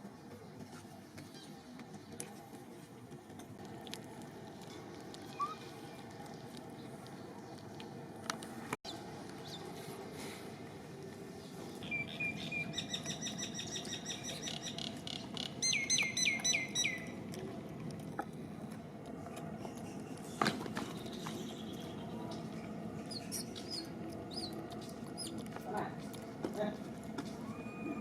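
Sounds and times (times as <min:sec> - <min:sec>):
high chirping animal calls: 0:11.8 - 0:17.2.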